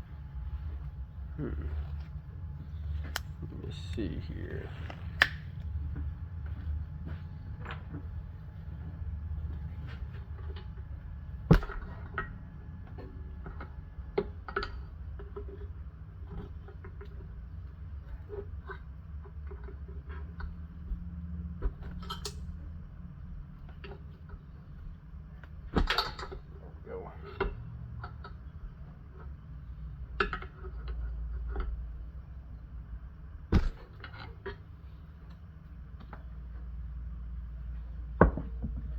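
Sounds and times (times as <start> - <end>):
low hum: 0.0 - 15.4.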